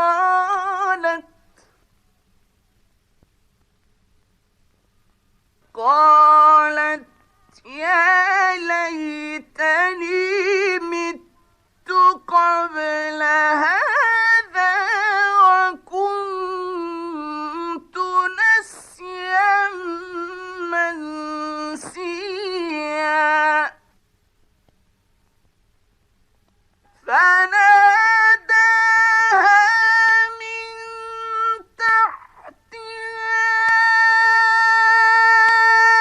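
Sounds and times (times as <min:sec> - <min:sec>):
man reciting melodically: 0:05.8 - 0:23.8, 0:27.0 - 0:36.0.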